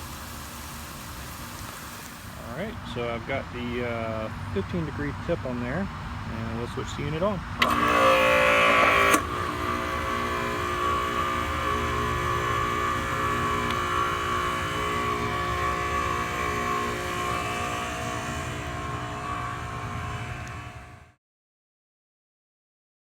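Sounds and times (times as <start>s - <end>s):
spray hissing: 0.0s - 3.3s, 9.1s - 20.6s
pressure washer motor whining: 0.0s - 5.6s, 6.4s - 21.2s.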